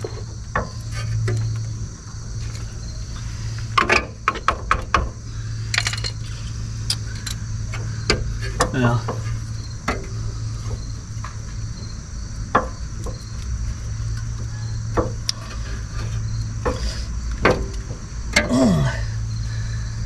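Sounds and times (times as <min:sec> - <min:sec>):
crickets chirring: 0:00.0 - 0:20.0
low hum: 0:05.0 - 0:20.0.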